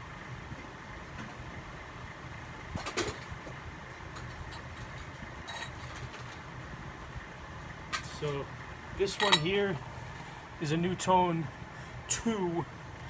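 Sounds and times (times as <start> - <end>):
ceiling fan motor humming: 6.5 - 13.0.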